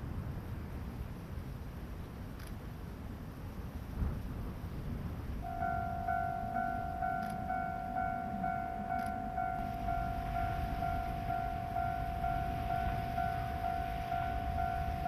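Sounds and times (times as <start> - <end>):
level crossing warning bell: 5.4 - 15.0.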